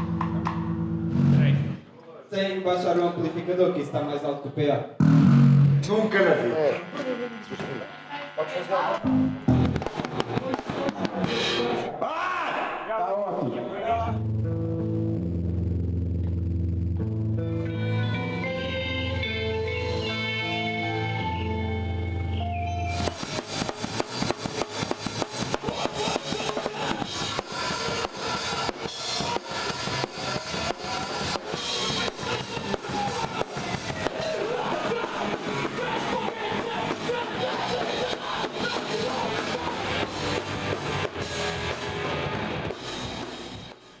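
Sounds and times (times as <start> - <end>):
rock band playing: 0.0 - 1.8, 9.0 - 11.9, 14.2 - 44.0
fast drum hits: 9.4 - 11.9, 23.1 - 42.0.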